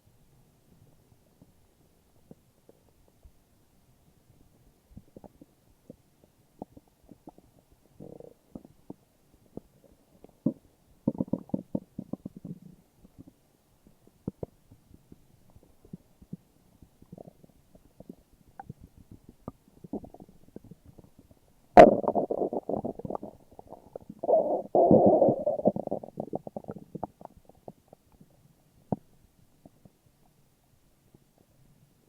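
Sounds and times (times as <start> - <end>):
stomach growling: 5.0 - 30.0.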